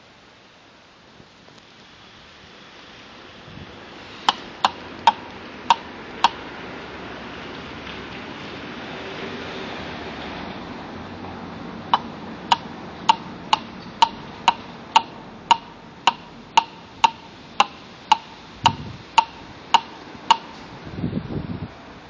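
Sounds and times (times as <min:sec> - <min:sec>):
raven knocking call: 0:04.2 - 0:06.4, 0:11.9 - 0:20.7.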